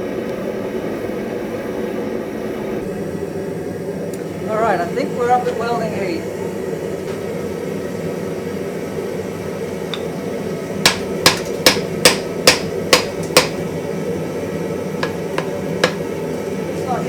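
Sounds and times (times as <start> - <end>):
hammer striking iron on anvil: 9.9 - 10.1, 10.8 - 13.6, 15.0 - 16.1.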